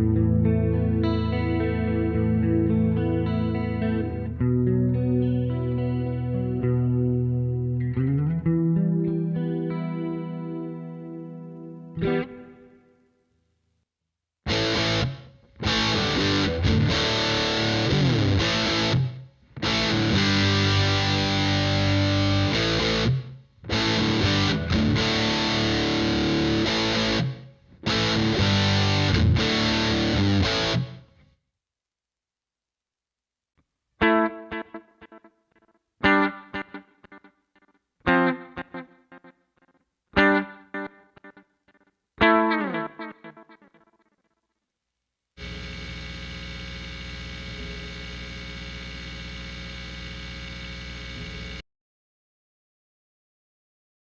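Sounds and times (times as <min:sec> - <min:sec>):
distorted electric guitar riffs: 0:00.0 - 0:12.9, 0:14.5 - 0:31.1, 0:34.0 - 0:35.2, 0:36.0 - 0:37.3, 0:38.1 - 0:39.3, 0:42.2 - 0:43.8, 0:45.4 - 0:51.6.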